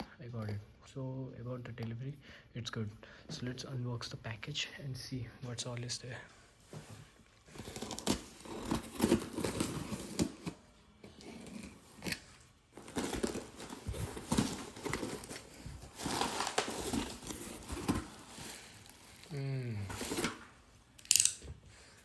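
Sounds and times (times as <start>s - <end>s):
packaging rustling and crinkling: 6.8s - 21.0s.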